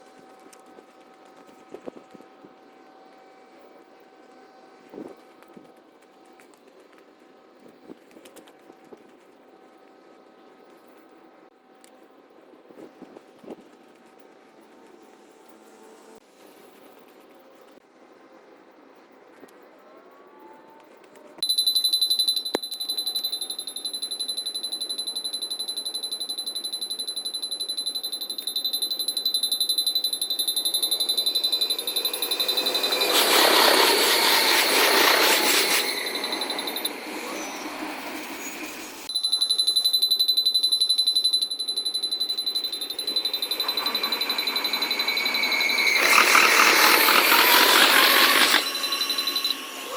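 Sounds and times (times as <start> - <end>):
level crossing bell dinging: 21.4 - 37.6, 39.1 - 49.9
train passing with rush: 30.2 - 39.1, 41.9 - 49.9.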